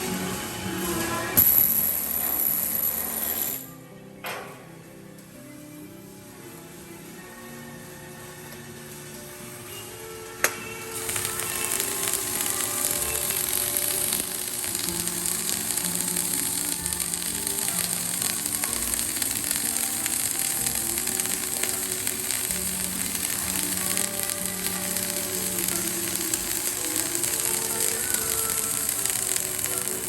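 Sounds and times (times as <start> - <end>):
background music: 0.0 - 30.0
welding arc crackling hiss: 10.7 - 30.0.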